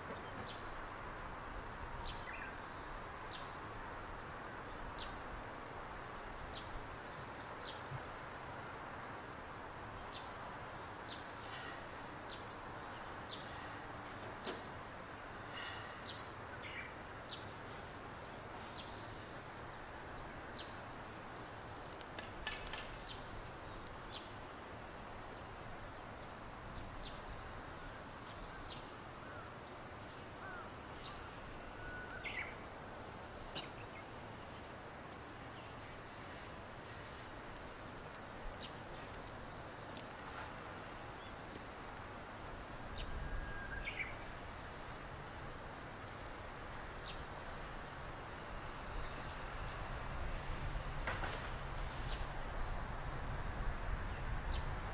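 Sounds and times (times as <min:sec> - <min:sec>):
steady background hiss: 0:00.0 - 0:54.9.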